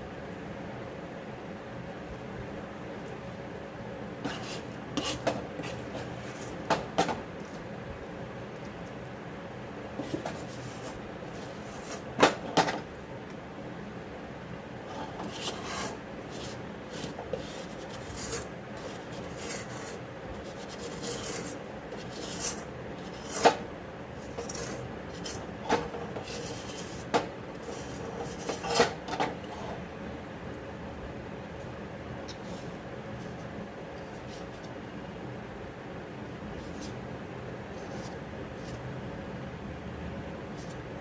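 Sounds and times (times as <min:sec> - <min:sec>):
metal spoon scraping a pan: 0:04.2 - 0:06.6, 0:27.6 - 0:29.8.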